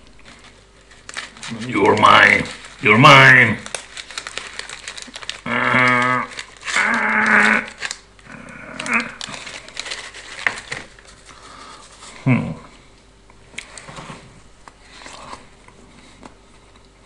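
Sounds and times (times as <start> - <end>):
candy wrapper crinkling: 0.1 - 12.0.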